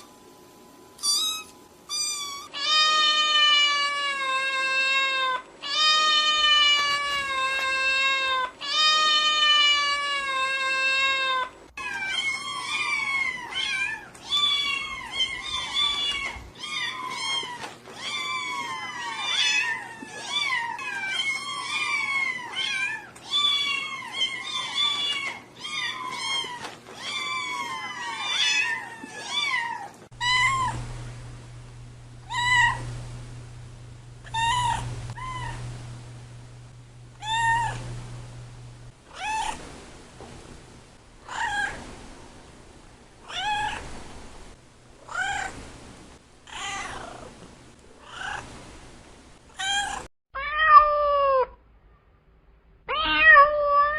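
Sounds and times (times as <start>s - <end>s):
low steady hum: 0.0s - 50.1s
long drawn-out cat meows: 52.9s - 53.9s.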